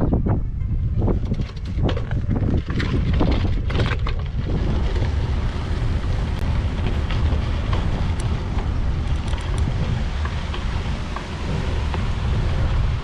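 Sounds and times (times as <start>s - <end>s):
wind buffeting microphone: 0.0s - 13.0s
sharp clicks or rattles: 9.0s - 9.7s.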